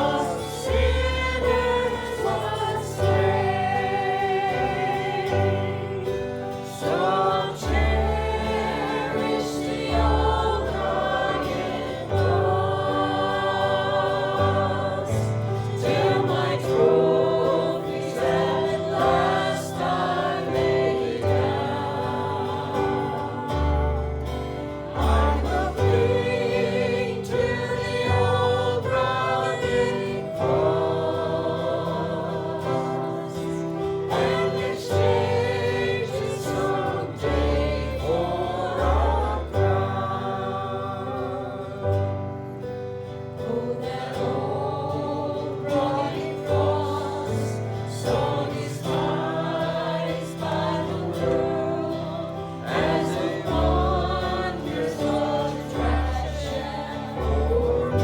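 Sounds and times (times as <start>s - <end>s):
group singing a hymn: 0.0s - 58.0s.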